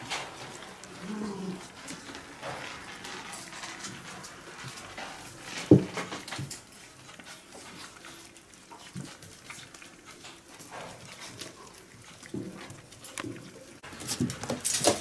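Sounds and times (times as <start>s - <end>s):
puppies scuffling: 0.0s - 15.0s.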